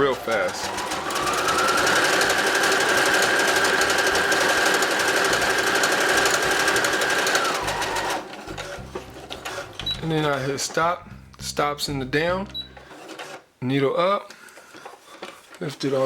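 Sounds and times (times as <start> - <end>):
sewing machine stitching: 0.0 - 10.8, 12.8 - 13.5.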